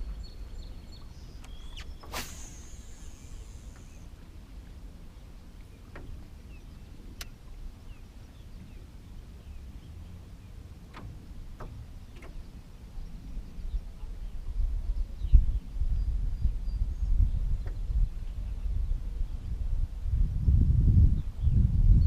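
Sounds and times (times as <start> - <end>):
faint bird chirps: 0.0 - 4.2.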